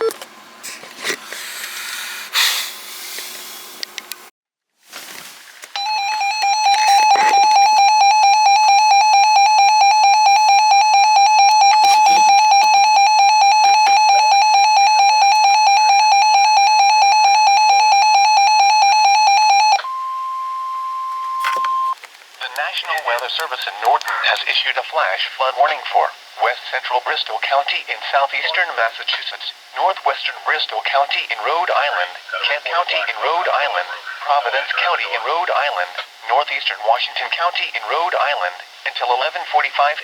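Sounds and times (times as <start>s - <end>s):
higher steady tone: 5.8s - 22.0s
noisy radio signal: 6.5s - 7.8s, 10.0s - 16.7s, 21.4s - 40.0s.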